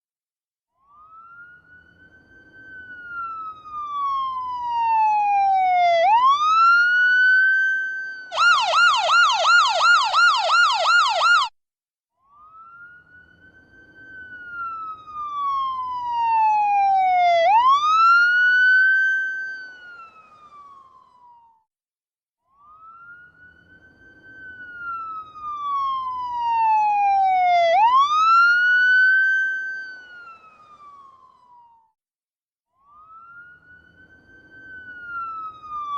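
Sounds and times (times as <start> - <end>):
siren fast yelp: 0.8 - 11.5, 22.6 - 32.0, 32.8 - 35.9
ambulance siren wail: 0.8 - 11.6, 12.3 - 21.7, 22.6 - 32.0, 32.8 - 35.9.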